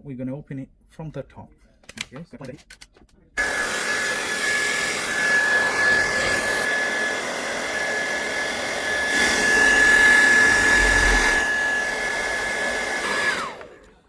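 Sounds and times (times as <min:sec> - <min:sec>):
hair dryer blowing: 0:03.4 - 0:14.0.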